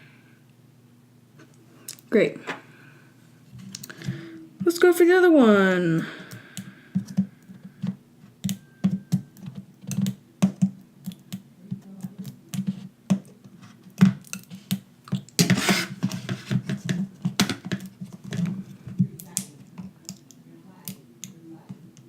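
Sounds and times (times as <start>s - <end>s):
tools clicking and tapping on phone: 6.3s - 13.3s.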